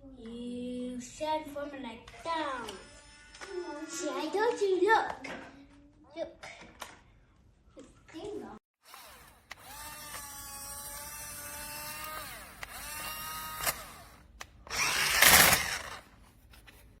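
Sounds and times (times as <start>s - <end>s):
electric motor whining: 8.9s - 16.0s.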